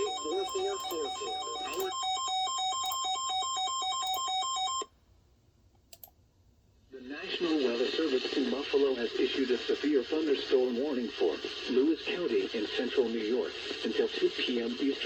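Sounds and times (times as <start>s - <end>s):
electronic beeping jingle: 0.0s - 4.9s.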